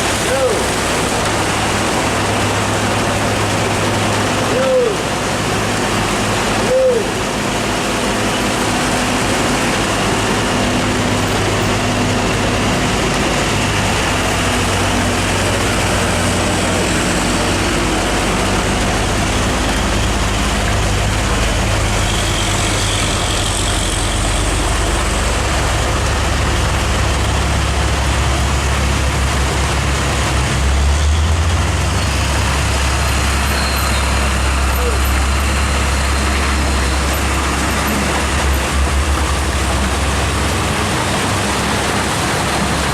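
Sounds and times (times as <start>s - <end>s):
diesel truck engine droning: 0.0s - 42.9s
heavy rain: 0.0s - 42.9s
short squeal: 22.0s - 24.6s, 33.4s - 36.4s.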